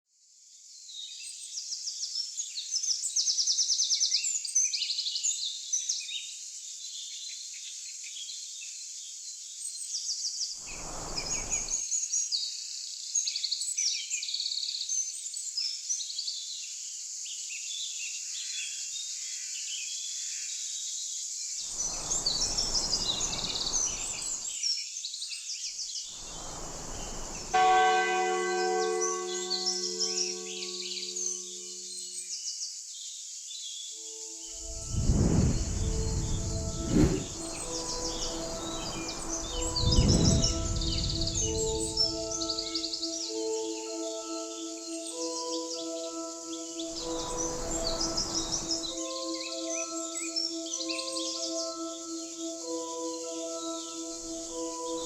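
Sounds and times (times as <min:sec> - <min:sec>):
bursts of rushing noise: 0:10.6 - 0:11.8, 0:21.8 - 0:24.4, 0:34.6 - 0:42.8, 0:47.0 - 0:49.0
steady high hiss: 0:10.6 - 0:11.8, 0:21.6 - 0:24.5, 0:26.1 - 0:32.0, 0:34.2 - 0:55.0
church bell ringing: 0:27.0 - 0:32.0, 0:37.3 - 0:50.0
birds chirping and singing: 0:34.7 - 0:55.0.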